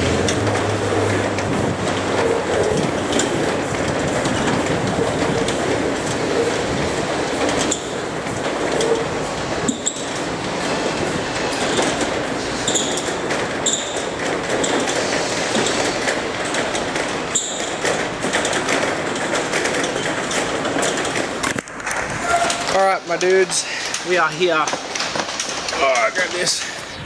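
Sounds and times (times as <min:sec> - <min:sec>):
car engine and road noise: 0:00.0 - 0:13.5.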